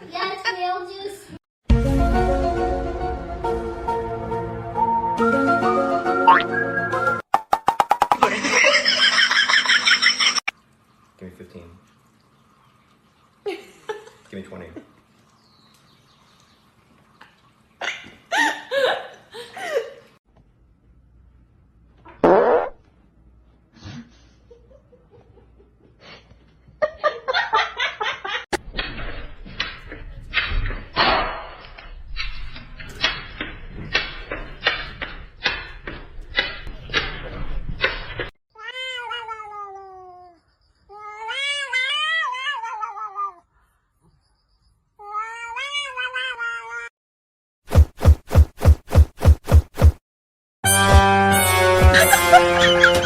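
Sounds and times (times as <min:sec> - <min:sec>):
cat meowing: 0:38.6 - 0:43.4, 0:45.0 - 0:46.9
fast run of short repeated sounds: 0:47.7 - 0:50.0.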